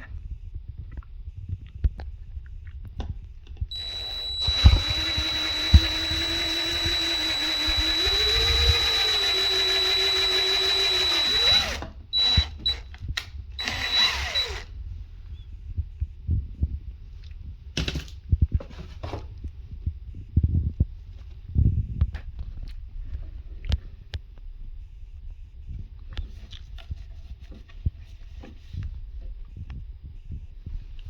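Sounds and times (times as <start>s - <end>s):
power drill whining: 3.7s - 13.0s, 13.6s - 14.7s.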